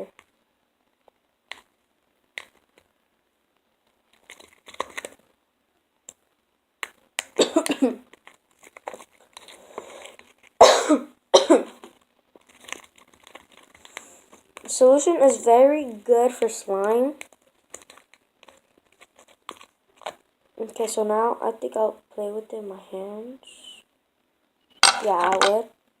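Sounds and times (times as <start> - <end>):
person coughing: 7.4 - 8.0, 10.6 - 11.8.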